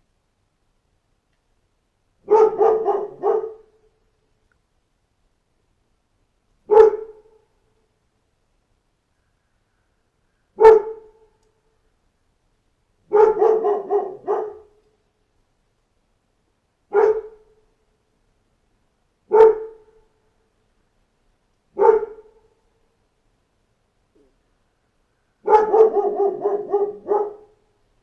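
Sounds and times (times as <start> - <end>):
dog barking: 2.2 - 3.8, 6.7 - 7.4, 10.6 - 11.3, 13.1 - 14.8, 16.9 - 17.6, 19.3 - 20.0, 21.8 - 22.5, 25.4 - 27.6.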